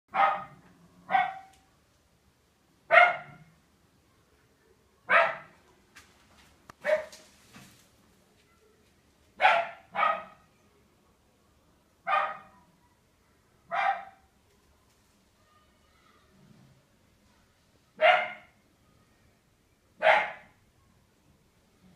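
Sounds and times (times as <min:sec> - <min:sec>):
dog barking: 0:00.1 - 0:01.6, 0:02.9 - 0:03.5, 0:05.1 - 0:05.6, 0:06.8 - 0:07.2, 0:09.4 - 0:10.4, 0:12.0 - 0:12.6, 0:13.7 - 0:14.3, 0:18.0 - 0:18.6, 0:20.0 - 0:20.6.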